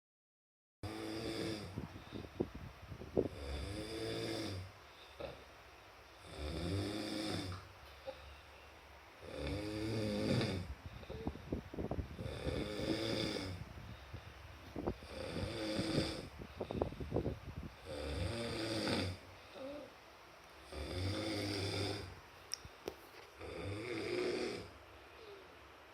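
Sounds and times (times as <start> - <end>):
person snoring heavily: 0.9 - 2.2, 3.3 - 5.4, 6.2 - 7.6, 9.2 - 11.4, 12.2 - 13.7, 15.0 - 17.0, 17.8 - 19.9, 20.7 - 22.1, 23.4 - 24.7
quiet breathing: 1.4 - 2.6, 3.2 - 18.1, 19.0 - 20.0, 24.6 - 25.7.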